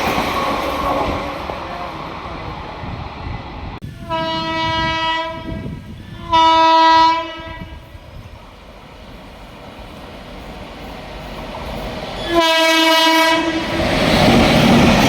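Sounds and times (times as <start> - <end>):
passing train running noise: 0.0 - 15.0
locomotive horn blasts: 4.0 - 5.6, 6.2 - 7.8, 12.2 - 13.7.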